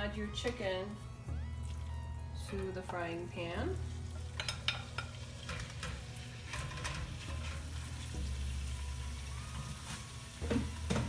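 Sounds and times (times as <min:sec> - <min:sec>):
chicken sizzling in a frying pan: 0:03.3 - 0:11.0.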